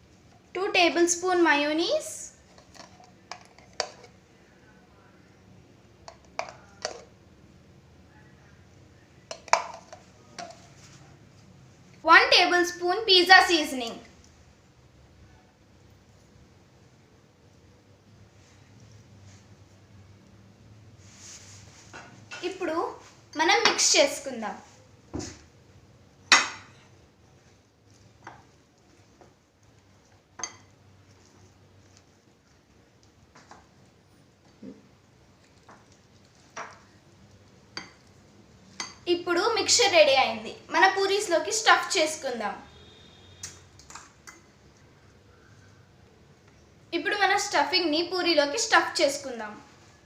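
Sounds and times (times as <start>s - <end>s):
spoon stirring in bowl: 2.4s - 4.2s, 6.0s - 7.2s, 9.3s - 11.0s, 27.4s - 39.0s.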